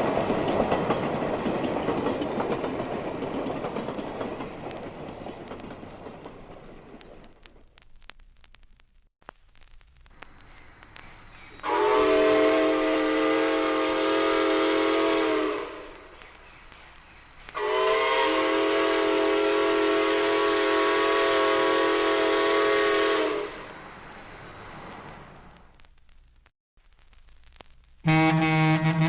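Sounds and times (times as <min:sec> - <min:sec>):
old record hiss and crackle: 0:00.0 - 0:29.0
locomotive chime whistle blasts: 0:11.5 - 0:15.9, 0:17.6 - 0:23.6.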